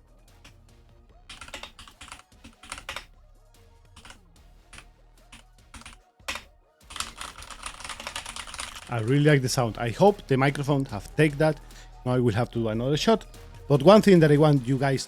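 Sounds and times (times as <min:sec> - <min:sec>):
mechanical keyboard typing: 0:01.3 - 0:03.1, 0:04.0 - 0:04.2, 0:05.3 - 0:09.1.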